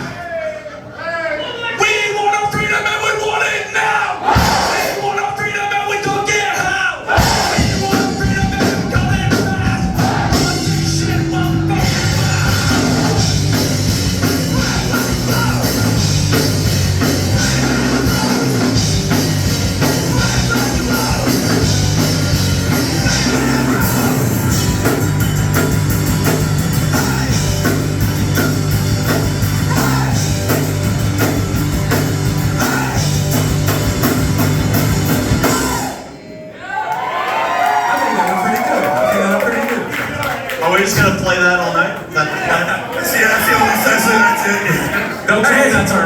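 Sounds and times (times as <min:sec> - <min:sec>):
rock band playing loud: 0:04.2 - 0:05.1, 0:07.1 - 0:36.3
drum kit: 0:04.2 - 0:05.2, 0:06.1 - 0:36.1
guitar: 0:06.6 - 0:37.2
bass: 0:07.1 - 0:36.2.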